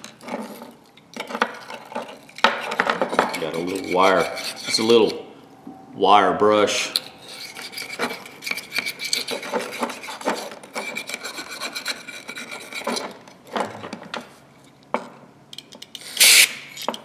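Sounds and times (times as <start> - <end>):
wire brush scrubbing metal: 2.6 - 5.2
short loud hiss: 16.2 - 16.6.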